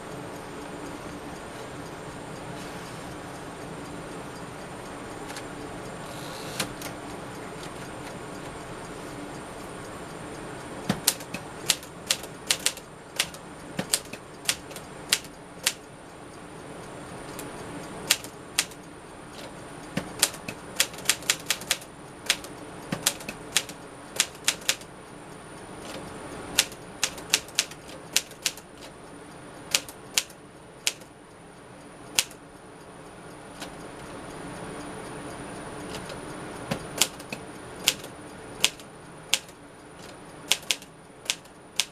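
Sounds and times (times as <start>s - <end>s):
faint steady hum: 0.0s - 41.9s
typewriter keystroke clacks: 10.9s - 15.8s, 18.1s - 24.9s, 26.6s - 28.9s, 29.7s - 31.1s, 32.1s - 32.4s, 35.9s - 41.9s.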